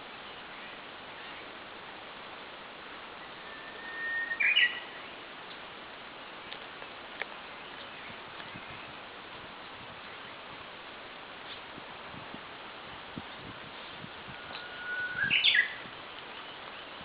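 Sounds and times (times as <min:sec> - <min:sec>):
bush warbler singing: 0:03.2 - 0:05.7, 0:13.2 - 0:17.0.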